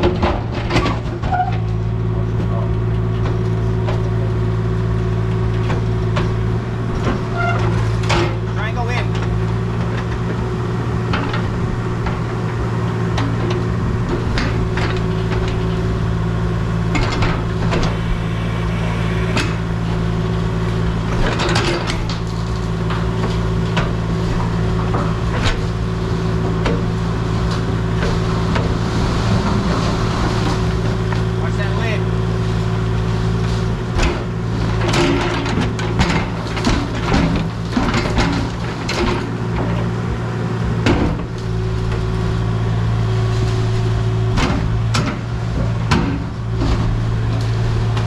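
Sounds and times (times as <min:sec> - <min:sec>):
digging machine engine running: 0:00.0 - 0:48.0.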